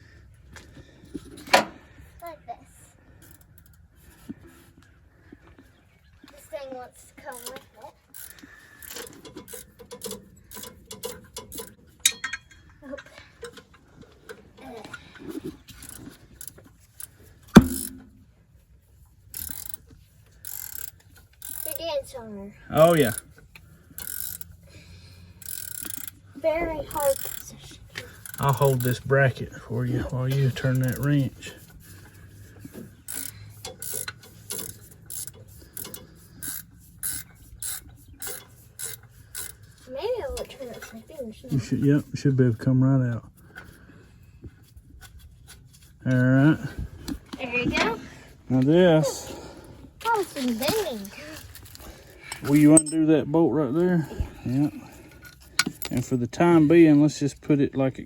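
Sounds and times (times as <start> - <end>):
ratchet wrench clicking: 7.3 - 12.6, 15.7 - 18.1, 19.3 - 21.8, 22.8 - 26.3, 26.9 - 29.1, 30.3 - 39.8
ringing metal clink: 9.5 - 12.7, 52.3 - 53.1, 55.6 - 56.2.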